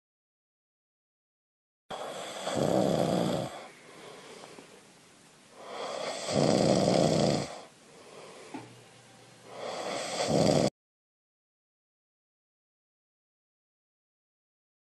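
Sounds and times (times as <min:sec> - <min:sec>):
person snoring: 0:01.9 - 0:04.7, 0:05.6 - 0:08.7, 0:09.4 - 0:10.8.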